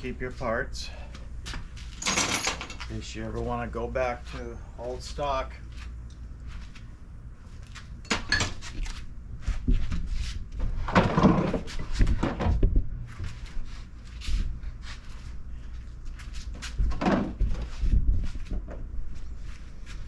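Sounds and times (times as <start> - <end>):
parts clattering when handled: 1.9 - 3.0.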